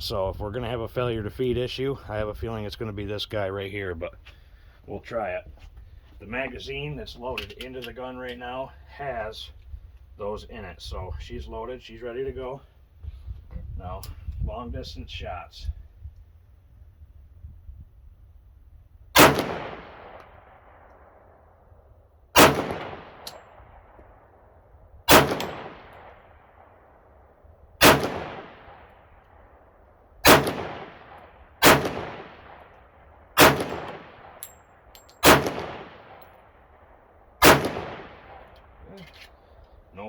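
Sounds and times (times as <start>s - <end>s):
pistol shots with echo: 19.2s - 21.4s, 22.3s - 24.4s, 25.1s - 27.0s, 27.8s - 29.1s, 30.2s - 32.8s, 33.4s - 34.5s, 35.2s - 36.4s, 37.4s - 38.6s.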